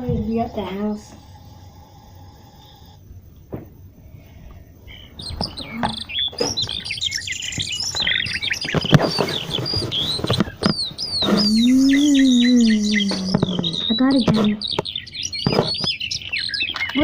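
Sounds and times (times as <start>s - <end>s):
birds chirping and singing: 4.0s - 17.0s
sharp knocks: 13.1s - 16.0s.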